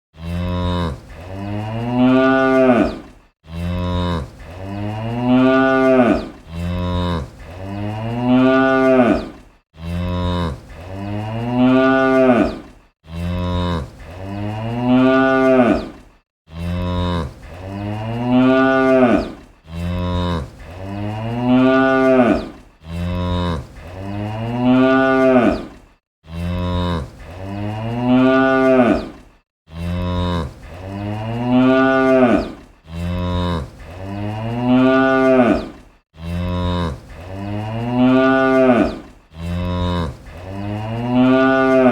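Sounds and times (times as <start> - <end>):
cow mooing: 0.2 - 41.9.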